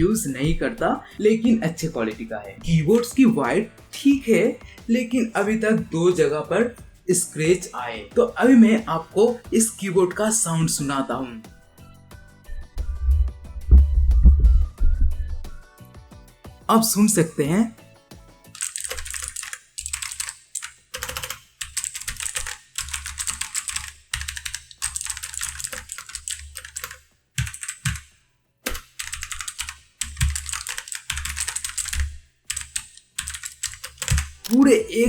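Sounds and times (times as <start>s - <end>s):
mechanical keyboard typing: 18.6s - 28.1s, 28.7s - 35.0s.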